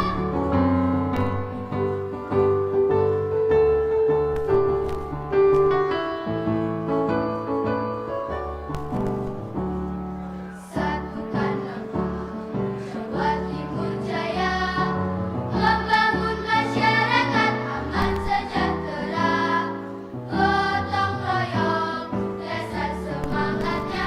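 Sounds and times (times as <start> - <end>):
instrumental accompaniment: 0.0 - 24.0
voices singing: 10.7 - 24.0.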